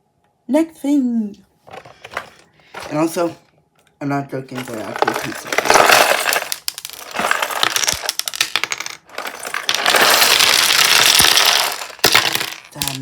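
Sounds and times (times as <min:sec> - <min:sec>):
plastic bricks clattering: 0:01.7 - 0:03.4, 0:04.5 - 0:13.0.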